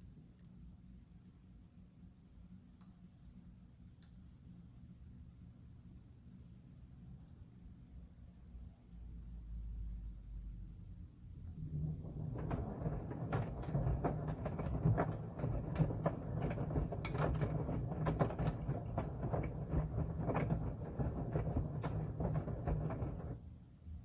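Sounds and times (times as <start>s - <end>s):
washing machine motor hum: 11.4s - 23.6s
washing machine drum clicking and knocking: 11.6s - 23.4s.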